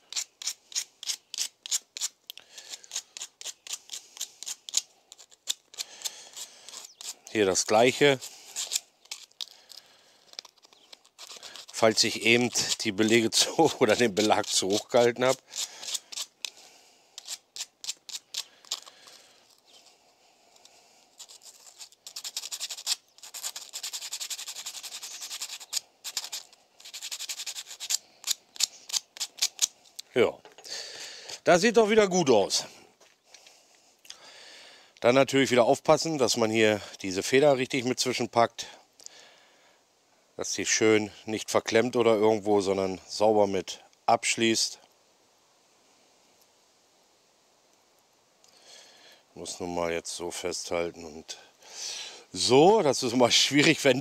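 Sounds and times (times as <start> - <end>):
brake pad scraping on sandpaper: 0.0 - 16.6, 17.2 - 20.0, 20.6 - 29.8.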